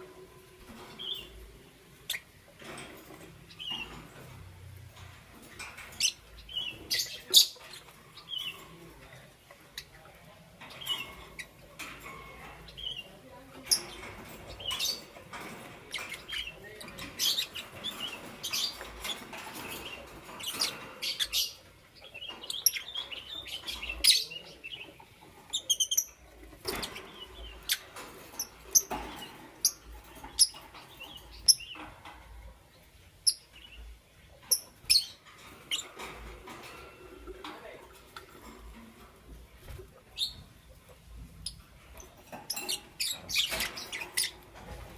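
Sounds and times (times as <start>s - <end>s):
lovebirds chirping: 0.0s - 44.9s.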